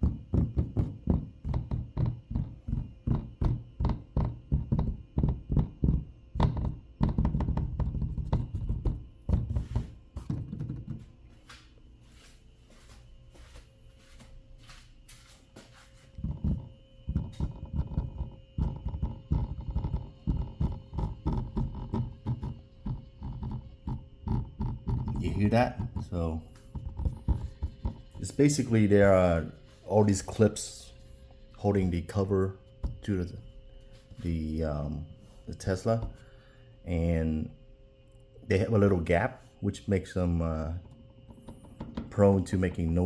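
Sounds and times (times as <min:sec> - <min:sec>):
hand tapping plastic cover: 0:08.2 - 0:11.1.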